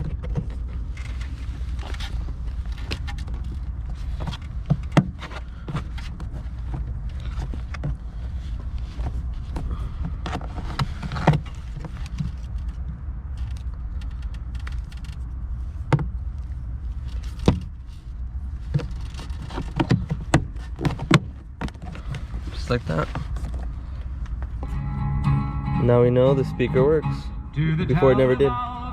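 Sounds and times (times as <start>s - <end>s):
steady low rumble: 21.4s - 28.9s.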